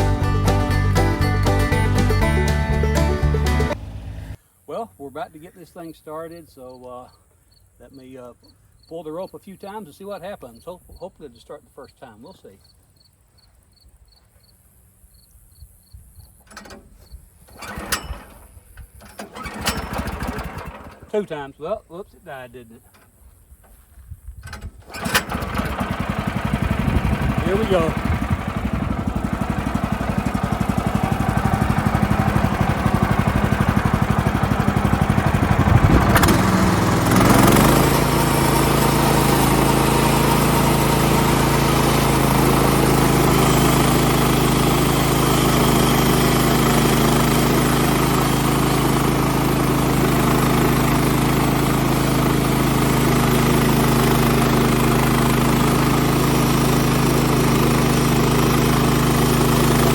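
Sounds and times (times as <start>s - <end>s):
sawmill engine idling and revving: 0.0s - 4.4s, 19.1s - 21.4s, 24.6s - 59.9s.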